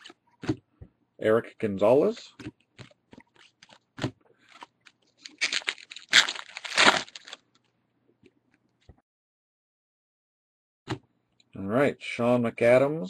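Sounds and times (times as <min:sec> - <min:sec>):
cards clicking and rustling: 0:02.4 - 0:07.4
wrapper tearing and crinkling: 0:04.5 - 0:07.6.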